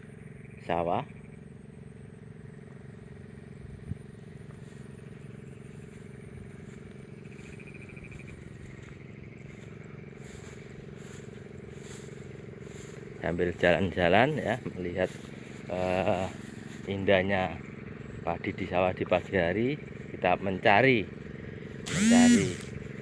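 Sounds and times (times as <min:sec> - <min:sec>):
small engine droning: 0:00.0 - 0:23.0
faint fast-pulsing high trill: 0:21.9 - 0:22.7.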